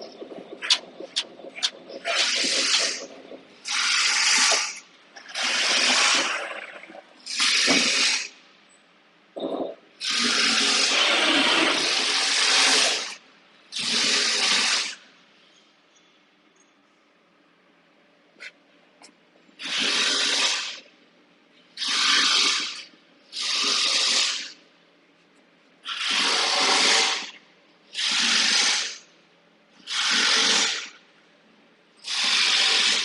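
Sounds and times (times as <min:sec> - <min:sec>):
rushing hissing mechanical bursts: 0:01.9 - 0:08.4, 0:10.0 - 0:15.1, 0:19.6 - 0:20.8, 0:21.8 - 0:24.6, 0:25.8 - 0:29.0, 0:29.8 - 0:31.0, 0:32.0 - 0:33.0.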